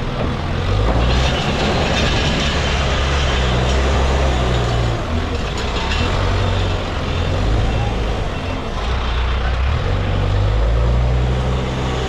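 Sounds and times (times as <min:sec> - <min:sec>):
heavy diesel engine under load: 0:00.0 - 0:12.0.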